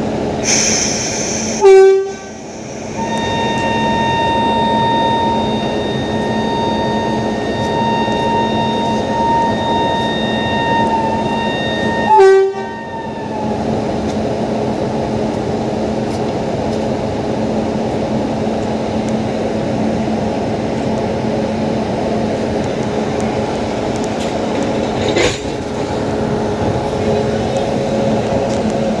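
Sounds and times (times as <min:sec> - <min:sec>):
electric locomotive humming: 0:00.0 - 0:29.0
train horn: 0:01.6 - 0:02.4, 0:03.0 - 0:13.6.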